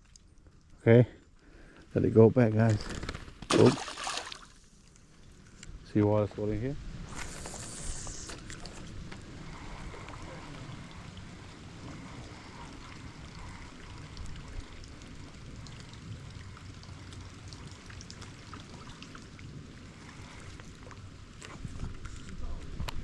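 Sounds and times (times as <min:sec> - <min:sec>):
steady rain hiss: 0:00.6 - 0:02.8, 0:04.5 - 0:23.0
rain drop ticks: 0:11.8 - 0:19.5.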